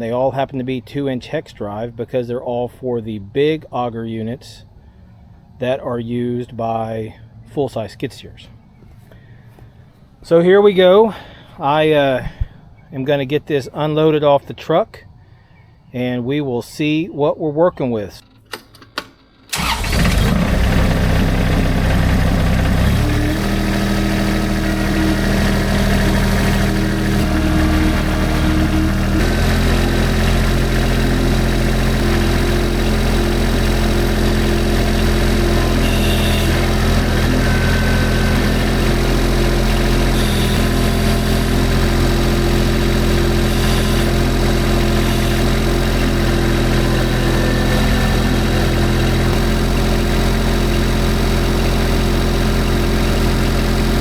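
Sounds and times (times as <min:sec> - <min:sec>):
skid steer engine running: 0:19.5 - 0:54.0.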